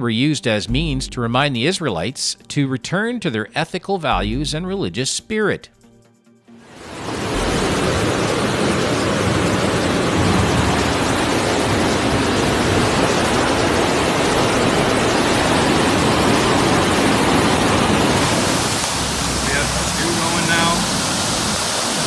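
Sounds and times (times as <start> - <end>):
floodwater rushing: 6.6 - 22.0.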